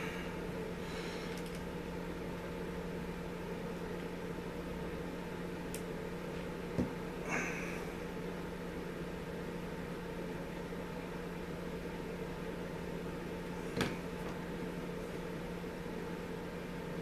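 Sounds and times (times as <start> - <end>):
two-pitch mechanical hum: 0.0 - 17.0.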